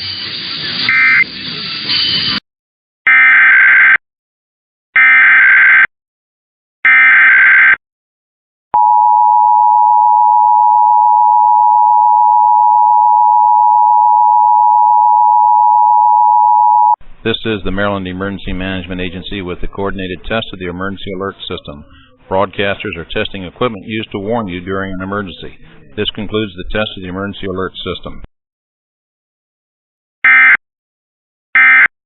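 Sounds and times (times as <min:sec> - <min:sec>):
screeching data bursts: 0:00.0 - 0:02.4
two-tone attention signal: 0:00.0 - 0:02.4.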